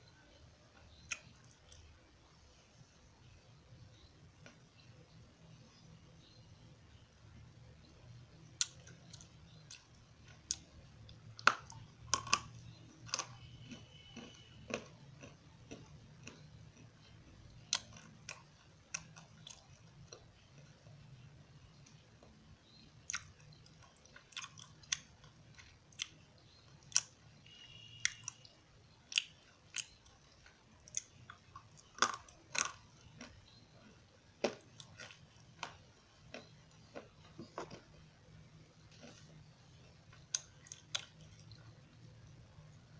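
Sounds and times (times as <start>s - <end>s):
low steady hum: 0.0s - 42.9s
crunchy clay being chewed: 8.6s - 21.0s, 21.8s - 28.5s, 29.1s - 38.1s, 38.8s - 41.7s.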